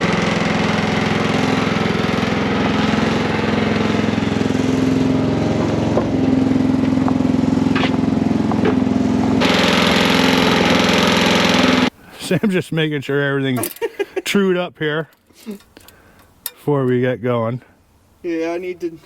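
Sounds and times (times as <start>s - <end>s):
sawmill engine running: 0.0s - 11.9s.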